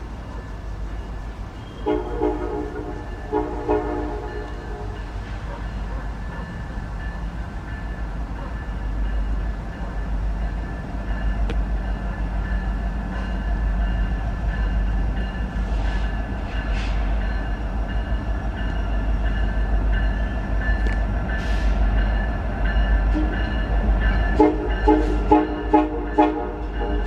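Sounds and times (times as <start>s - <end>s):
freight train rumbling: 0.0s - 27.0s
locomotive horn blasts: 1.6s - 5.2s, 23.1s - 23.5s, 24.3s - 27.0s.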